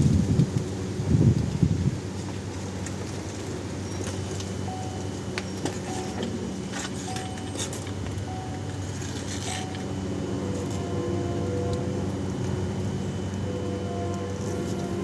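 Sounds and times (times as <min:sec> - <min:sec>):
steady low hum: 0:00.0 - 0:15.0
car warning chime beeping: 0:04.6 - 0:05.2, 0:07.1 - 0:07.6, 0:08.2 - 0:08.7
low rumble: 0:09.7 - 0:15.0.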